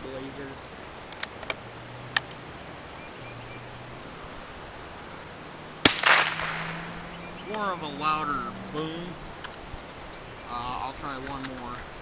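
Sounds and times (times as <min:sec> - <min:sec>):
faint clicks: 0:01.1 - 0:02.4
gunshot with echo: 0:05.8 - 0:07.0.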